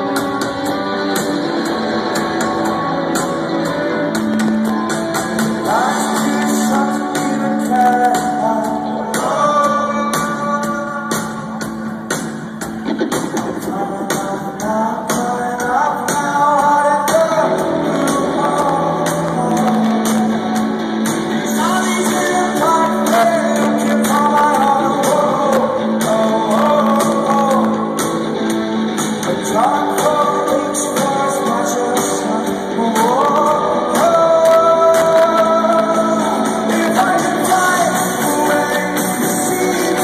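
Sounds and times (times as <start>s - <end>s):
bass line: 0.0s - 40.0s
lead vocal singing: 0.0s - 40.0s
drum beat: 11.1s - 17.4s.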